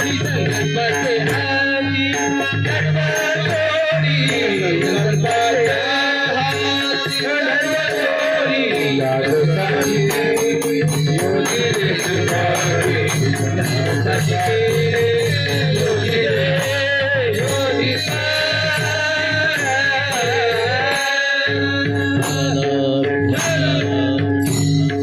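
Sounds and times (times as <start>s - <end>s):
person singing: 0.0s - 24.4s.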